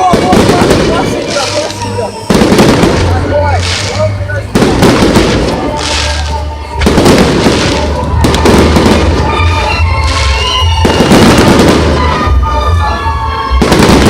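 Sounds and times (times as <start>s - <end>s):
firework crackle: 0.0s - 12.4s, 13.6s - 14.0s
firework shell bursts: 0.5s - 9.3s.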